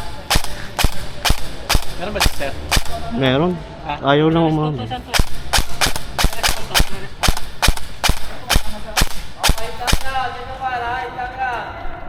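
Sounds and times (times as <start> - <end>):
airsoft gun firing: 0.0 - 3.1, 5.1 - 10.4.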